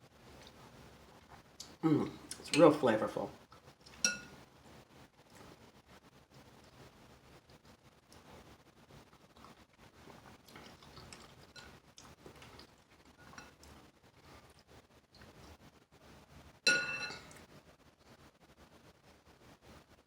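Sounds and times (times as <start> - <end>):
faint chewing: 0.3 - 2.6, 3.5 - 5.7, 6.3 - 15.8, 16.7 - 18.2
utensil clinking against dish: 3.9 - 4.3, 16.7 - 17.4.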